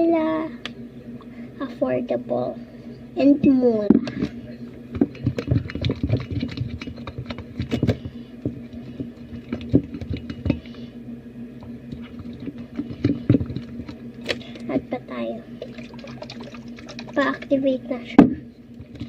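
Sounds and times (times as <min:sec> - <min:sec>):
steady low hum: 0:00.0 - 0:19.0
slime being stirred with a stick: 0:05.0 - 0:08.0, 0:12.0 - 0:14.3, 0:15.5 - 0:17.6.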